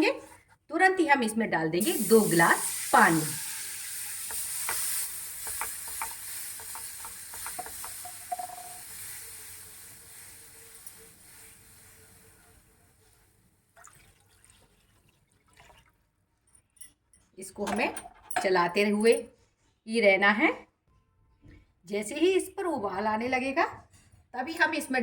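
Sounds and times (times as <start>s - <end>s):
water sizzling in hot pan: 1.8s - 13.3s.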